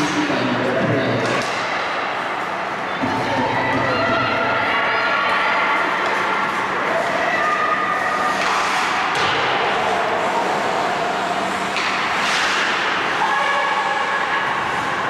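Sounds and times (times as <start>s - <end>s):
hockey sticks and puck knocking: 1.2s - 2.0s, 8.2s - 10.9s, 11.6s - 13.2s
skate blades scraping ice: 5.7s - 15.0s.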